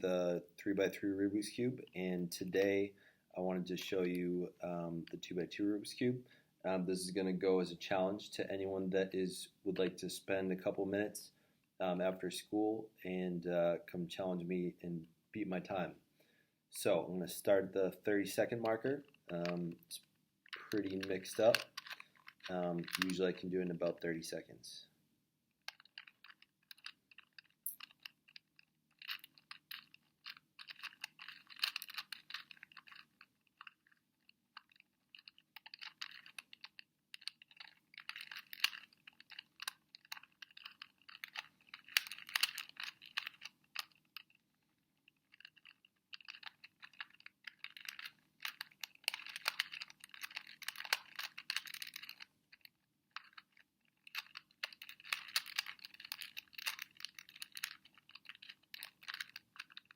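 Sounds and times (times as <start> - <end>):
puzzle cube clicking and rattling: 17.4 - 24.0, 25.6 - 59.9.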